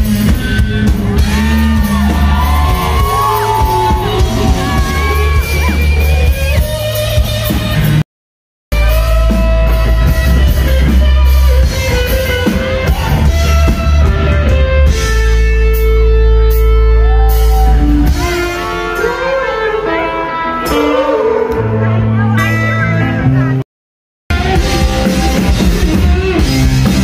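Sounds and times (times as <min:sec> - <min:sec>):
drum kit: 0:00.0 - 0:08.0, 0:08.7 - 0:18.9, 0:24.3 - 0:27.0
electric guitar: 0:00.0 - 0:08.0, 0:08.8 - 0:23.6, 0:24.3 - 0:27.0
live rock band playing: 0:00.0 - 0:08.0, 0:08.7 - 0:23.6, 0:24.3 - 0:27.0.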